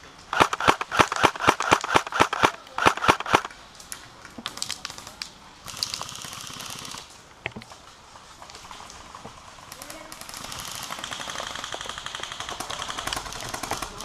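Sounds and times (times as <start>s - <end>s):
airsoft rifle shots: 0.3s - 3.5s
distant airsoft shots: 0.3s - 3.5s.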